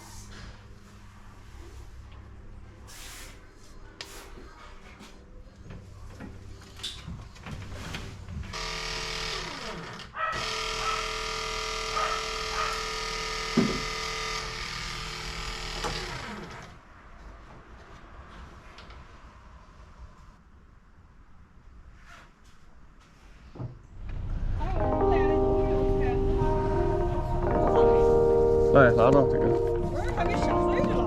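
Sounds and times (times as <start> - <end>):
small electric motor whining: 8.6 - 16.6.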